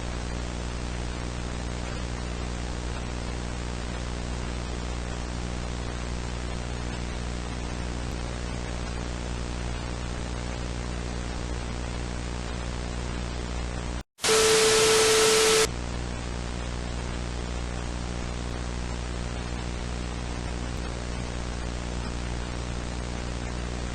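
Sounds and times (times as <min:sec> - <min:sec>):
broadcast static hiss: 0:00.0 - 0:23.9
harsh noise burst with tone: 0:14.2 - 0:15.7
low hum: 0:14.2 - 0:15.7.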